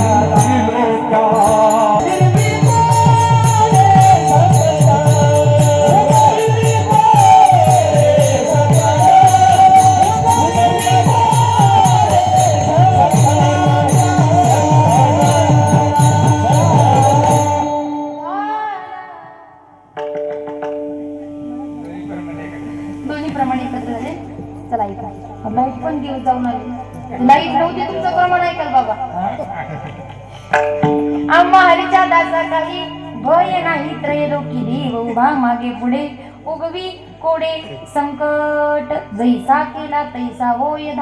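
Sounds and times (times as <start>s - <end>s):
small hand cymbals: 0.0s - 18.2s
harmonium drone: 0.0s - 19.5s, 20.6s - 41.0s
woman singing devotional melody: 0.0s - 20.0s, 21.0s - 41.0s.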